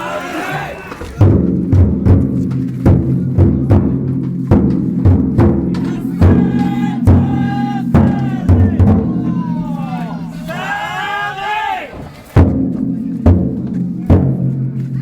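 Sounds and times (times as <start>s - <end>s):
voices calling out: 0.0s - 1.4s, 5.6s - 12.4s
large drum beaten: 1.1s - 15.0s.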